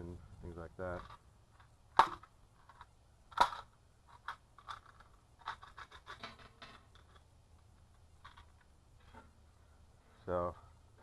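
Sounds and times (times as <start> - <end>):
small clicks and scrapes: 1.0 - 9.4.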